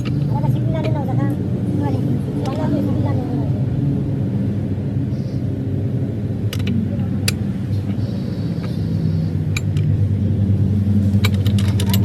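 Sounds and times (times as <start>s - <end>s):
sharp clicks or knocks: 11.1s - 12.0s.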